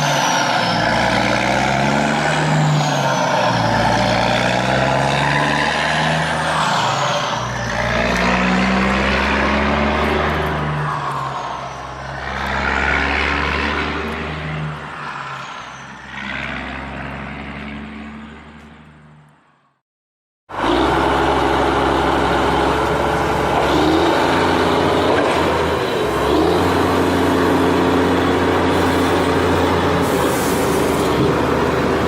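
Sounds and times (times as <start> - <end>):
truck engine running: 20.5 - 32.0.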